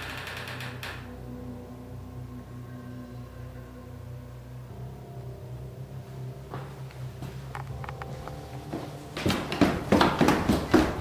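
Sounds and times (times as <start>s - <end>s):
quick footsteps: 6.5s - 11.0s.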